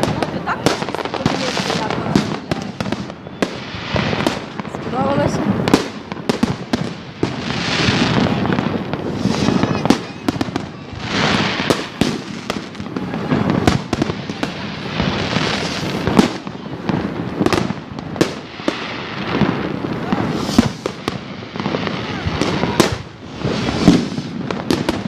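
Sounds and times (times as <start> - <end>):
fireworks bangs and pops: 0.0 - 25.0
fireworks crackling: 0.0 - 25.0.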